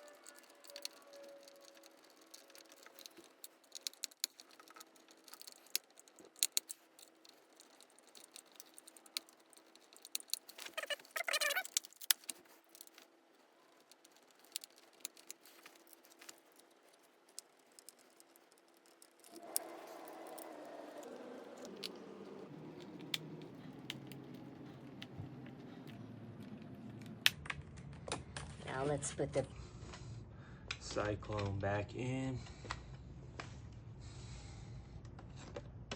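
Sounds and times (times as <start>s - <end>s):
screws rattling on plastic: 0.0s - 22.0s.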